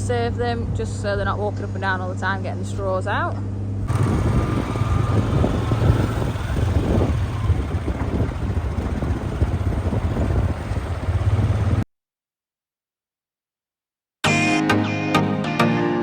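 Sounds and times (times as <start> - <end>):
vehicle engine running: 3.8 - 11.8
rough knocking and rattling: 3.9 - 11.8.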